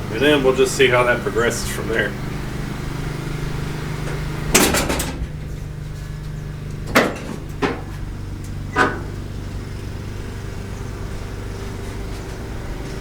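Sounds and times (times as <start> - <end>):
steady low hum: 0.0 - 13.0
metal clunks of van hood: 4.0 - 5.9, 6.8 - 9.4.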